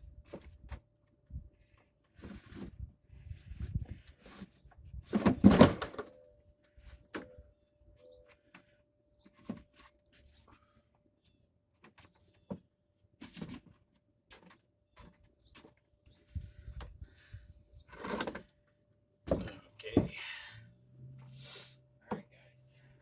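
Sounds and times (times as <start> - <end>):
knocks and clunks of lawn mower: 17.9 - 18.5, 19.3 - 20.1.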